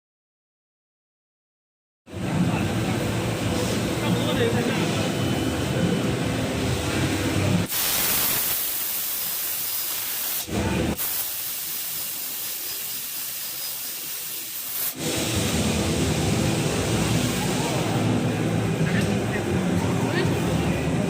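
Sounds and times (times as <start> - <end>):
loud hiss of laser cutting gas: 7.6 - 18.2.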